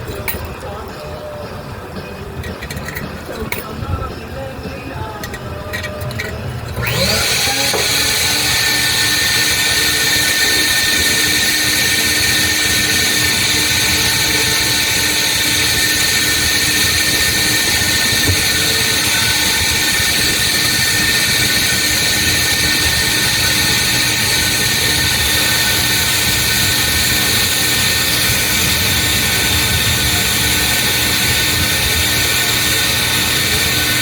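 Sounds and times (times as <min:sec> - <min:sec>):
vacuum motor whine and hiss: 0:06.8 - 0:34.0.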